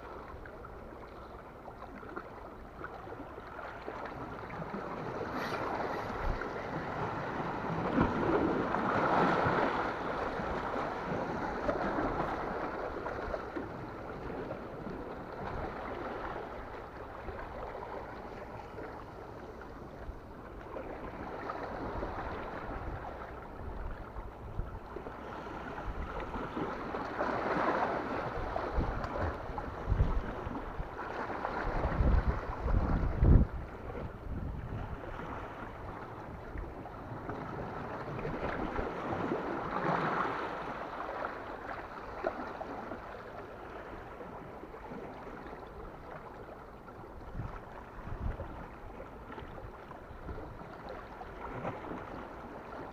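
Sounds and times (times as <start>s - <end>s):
sea waves washing against rocks: 4.2s - 16.5s
wind buffeting microphone: 28.2s - 36.8s, 47.2s - 48.8s.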